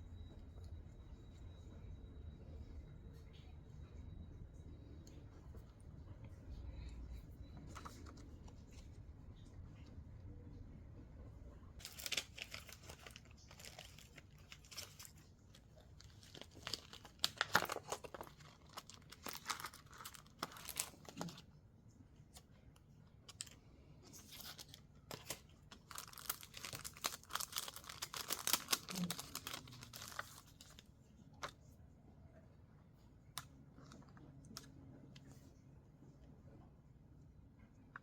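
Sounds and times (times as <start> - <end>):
paper rustling and crinkling: 7.5 - 9.5, 11.8 - 21.5, 23.3 - 31.6.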